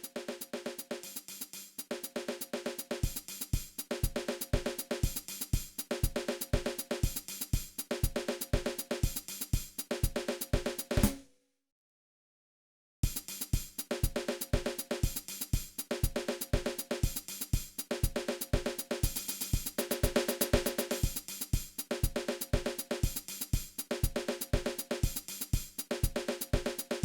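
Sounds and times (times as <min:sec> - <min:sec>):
drum kit playing a groove: 0:00.0 - 0:11.2.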